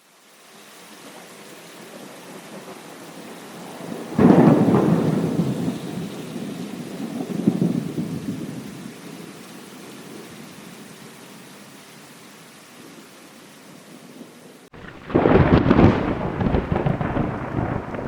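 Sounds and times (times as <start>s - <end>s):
steady rain: 0.0s - 18.0s
thunder rumbling: 2.6s - 9.1s, 14.8s - 18.0s.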